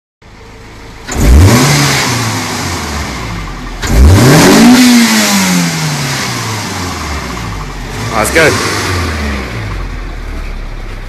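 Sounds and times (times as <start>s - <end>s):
car engine revving: 1.0s - 10.9s.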